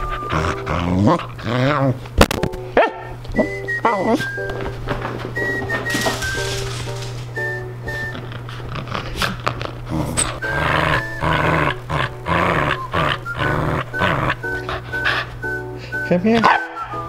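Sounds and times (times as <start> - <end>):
background music: 0.0 - 1.7, 2.3 - 8.5, 9.9 - 17.0
dog growling and grunting: 0.1 - 2.0, 8.4 - 14.9.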